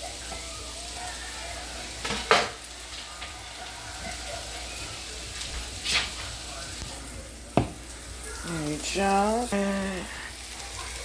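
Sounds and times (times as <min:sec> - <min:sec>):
food sizzling in a frying pan: 0:00.0 - 0:11.0
utensil scraping a pan: 0:05.4 - 0:06.3.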